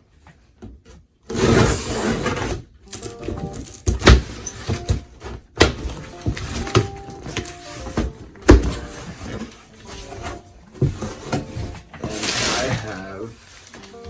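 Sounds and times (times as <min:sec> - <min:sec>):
music with thumping beat: 0:03.1 - 0:12.0.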